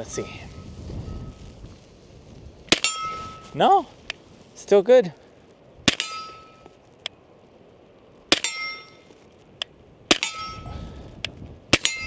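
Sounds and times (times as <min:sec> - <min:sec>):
suppressed pistol shots: 0:02.7 - 0:03.0, 0:05.8 - 0:07.2, 0:08.3 - 0:09.0, 0:09.6 - 0:10.6
metallic ringing of steel target: 0:02.7 - 0:03.8, 0:05.9 - 0:06.7, 0:08.3 - 0:09.1, 0:10.1 - 0:11.0, 0:11.8 - 0:12.0.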